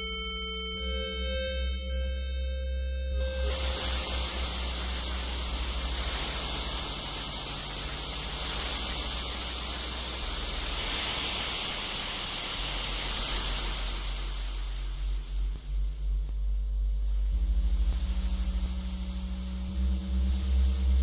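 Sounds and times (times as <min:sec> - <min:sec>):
low synth drone: 0:00.0 - 0:10.7, 0:13.7 - 0:21.0
synthesized hiss-like noise: 0:00.0 - 0:21.0.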